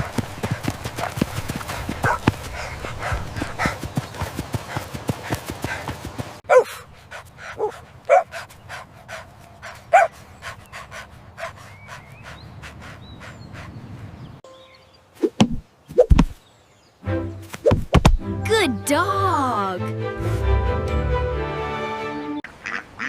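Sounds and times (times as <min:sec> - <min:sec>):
dog panting: 0:00.0 - 0:14.3
dog barking: 0:02.0 - 0:02.3, 0:06.5 - 0:06.8, 0:07.5 - 0:08.3, 0:09.9 - 0:10.1.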